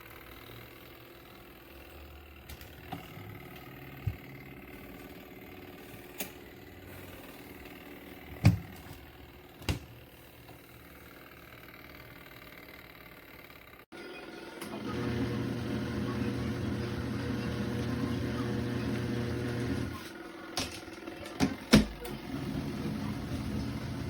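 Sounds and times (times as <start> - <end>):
washing machine motor humming: 0.0 - 24.0.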